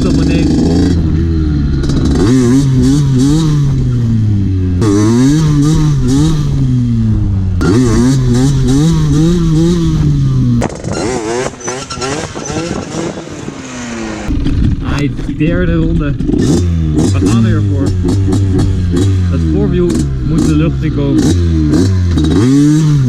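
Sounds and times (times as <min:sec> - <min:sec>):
moped engine revving: 0:00.0 - 0:23.0.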